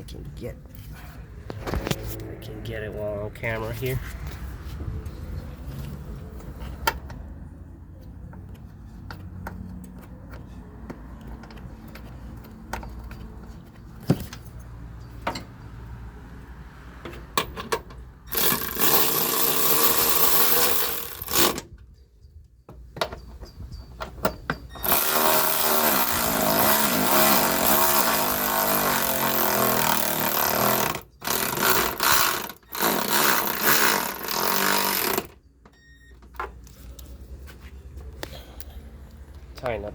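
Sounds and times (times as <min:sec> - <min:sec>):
power tool driving a bolt: 0:17.4 - 0:21.7, 0:24.7 - 0:35.4.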